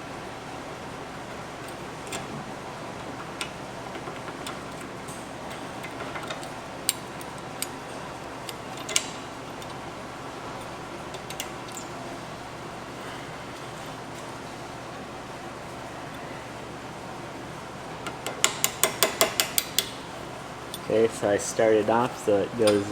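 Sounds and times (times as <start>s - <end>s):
steady background hiss: 0.0s - 22.9s.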